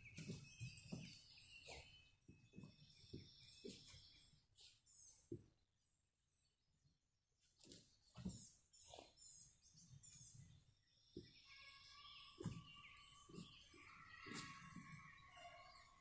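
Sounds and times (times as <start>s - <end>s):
soft thumps and knocks: 0.0s - 4.1s
birds chirping: 0.0s - 5.6s, 7.7s - 16.0s.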